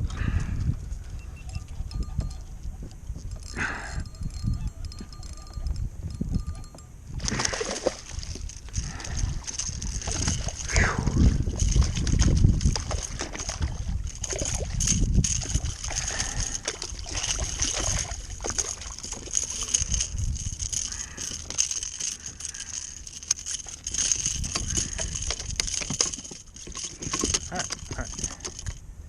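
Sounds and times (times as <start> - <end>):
wind buffeting microphone: 0.0 - 29.0
water lapping against kayak: 7.1 - 28.8.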